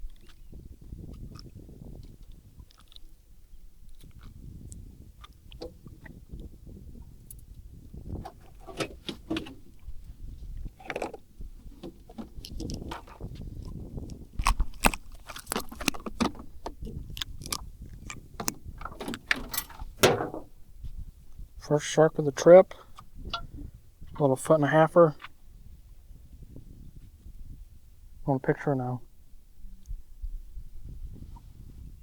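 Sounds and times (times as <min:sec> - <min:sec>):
clicks taps and rustles: 0:10.8 - 0:20.5.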